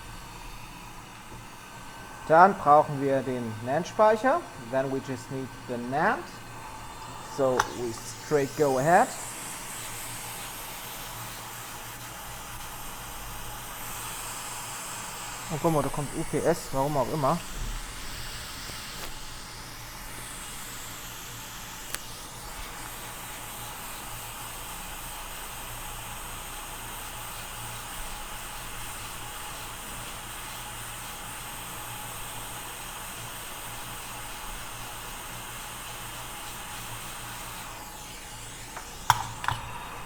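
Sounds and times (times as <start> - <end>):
hot-air station hissing: 0.0 - 40.0
sharp click: 7.4 - 8.1.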